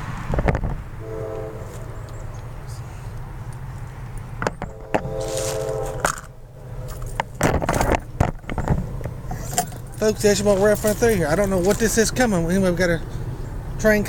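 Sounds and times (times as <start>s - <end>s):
low train rumble: 0.0s - 14.0s
distant locomotive horn: 1.0s - 3.2s, 3.9s - 6.9s.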